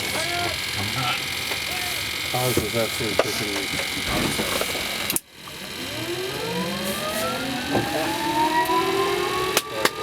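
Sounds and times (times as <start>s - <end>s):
helicopter turbine whine spooling up: 3.9s - 10.0s.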